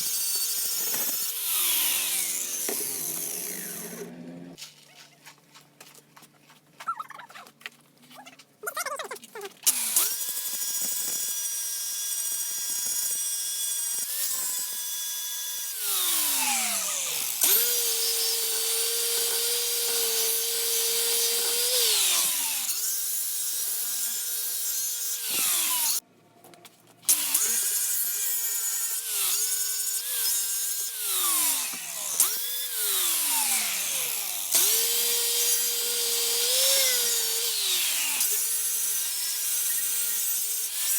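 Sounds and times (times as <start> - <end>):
power tool motor whining: 0.0 - 4.6, 15.8 - 22.8, 31.0 - 40.9.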